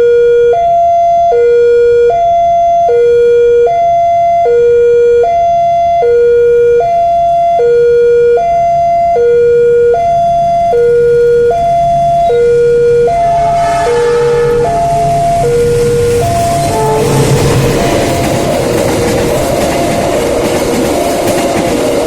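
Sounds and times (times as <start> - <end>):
level-crossing hi-lo alarm: 0.0 - 20.6
approaching train rushing: 11.8 - 22.0.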